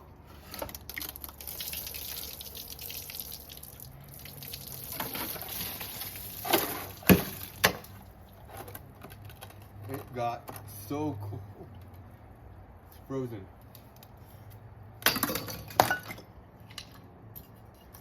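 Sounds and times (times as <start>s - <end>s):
water splashing and trickling: 0.5s - 9.5s.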